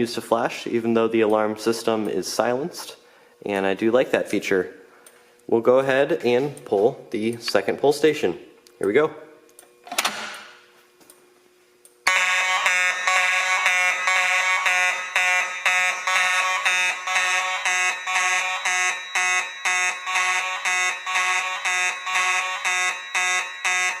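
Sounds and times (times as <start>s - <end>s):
pulsing buzzy fire alarm horn: 12.0s - 24.0s.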